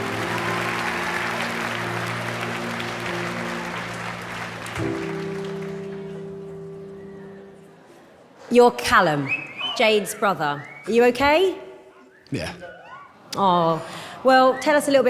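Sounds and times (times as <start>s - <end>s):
audience applause: 0.0s - 7.3s, 13.1s - 15.0s
sustained music chords: 0.0s - 7.9s.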